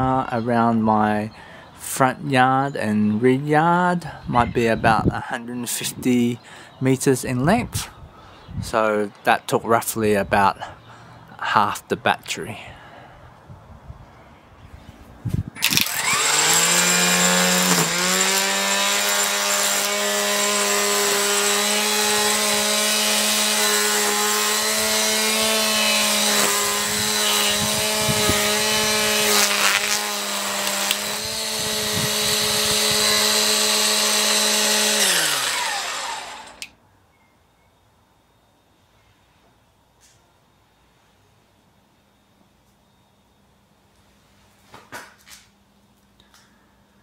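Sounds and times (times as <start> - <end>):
line trimmer motor whirring: 15.6 - 36.7.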